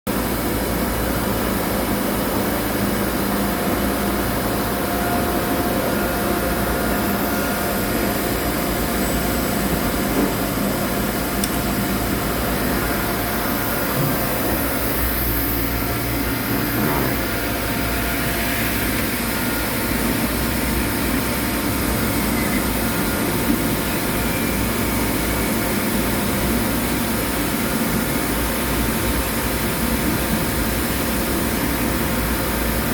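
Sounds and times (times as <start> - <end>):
cnc machine running: 0.2 - 32.9.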